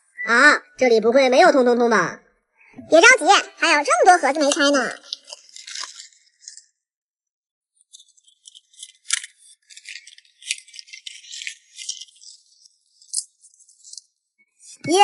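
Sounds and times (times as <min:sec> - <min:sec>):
packaging rattling and crinkling: 0:04.0 - 0:06.8, 0:07.8 - 0:14.1.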